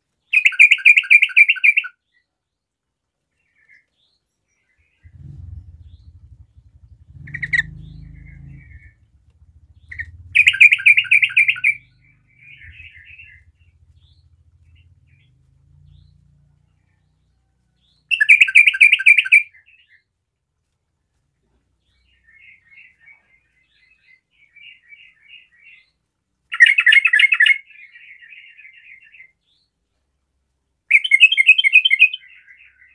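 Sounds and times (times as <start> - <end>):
bird chirps: 0.2 - 2.4, 3.4 - 20.1, 21.4 - 29.8, 30.9 - 32.9
bird bubbling song: 4.7 - 16.2, 18.1 - 20.0.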